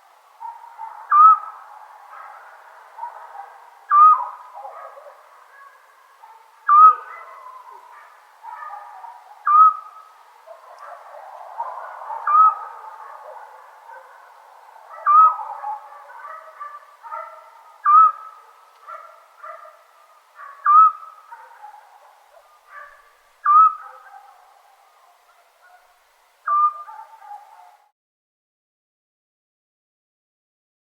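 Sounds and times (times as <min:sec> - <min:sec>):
owl whistled call: 0:01.1 - 0:01.6, 0:03.9 - 0:04.4, 0:06.7 - 0:07.1, 0:09.4 - 0:10.1, 0:12.2 - 0:12.8, 0:15.0 - 0:15.5, 0:17.8 - 0:18.4, 0:20.6 - 0:21.2, 0:23.4 - 0:23.8, 0:26.4 - 0:26.9.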